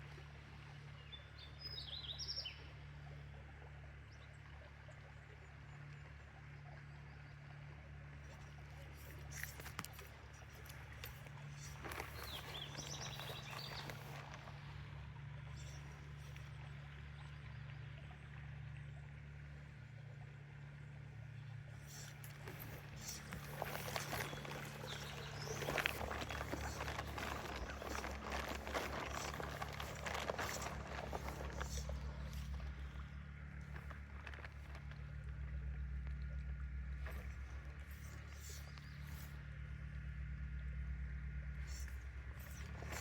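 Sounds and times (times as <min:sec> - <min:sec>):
low hum: 0:00.0 - 0:43.0
bird chirping: 0:08.3 - 0:14.4, 0:21.8 - 0:33.0.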